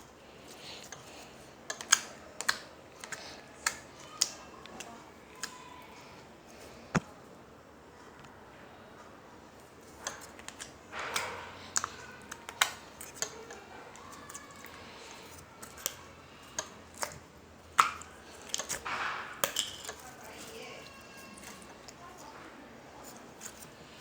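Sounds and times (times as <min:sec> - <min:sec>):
slime squelching: 0:00.2 - 0:07.2, 0:09.6 - 0:24.0.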